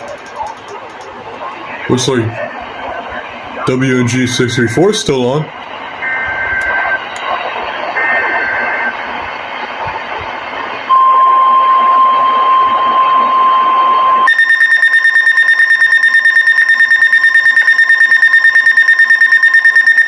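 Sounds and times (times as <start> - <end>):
radio hiss: 0.0 - 13.2
rapid shrill alarm beeping: 10.9 - 20.0.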